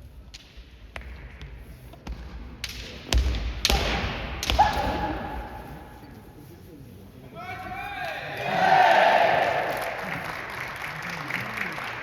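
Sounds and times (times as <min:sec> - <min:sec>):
bamboo sword strikes cracking: 0:02.6 - 0:05.1.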